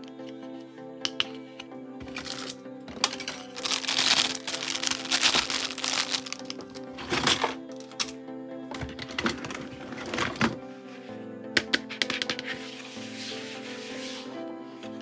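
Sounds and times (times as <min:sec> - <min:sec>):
background music: 0:00.0 - 0:15.0
plastic packaging crinkling: 0:02.0 - 0:08.1
plastic toy pieces clicking: 0:02.1 - 0:08.2.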